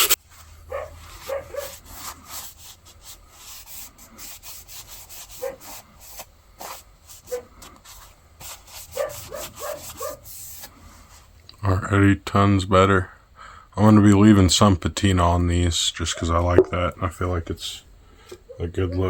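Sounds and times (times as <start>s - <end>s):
sandpaper scratching on steel: 0.9s - 10.7s.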